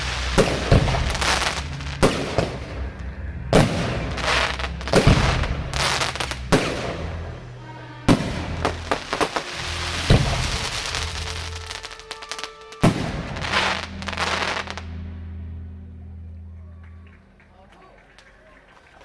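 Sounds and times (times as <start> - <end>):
fireworks bangs with crackling: 0.0 - 14.9
music playing: 0.0 - 18.5.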